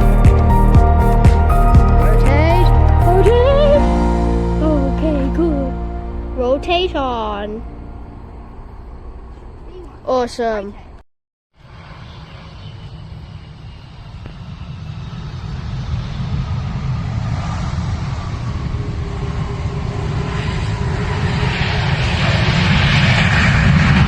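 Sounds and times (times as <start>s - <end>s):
airliner engines rumbling: 0.0s - 11.0s, 11.6s - 24.0s.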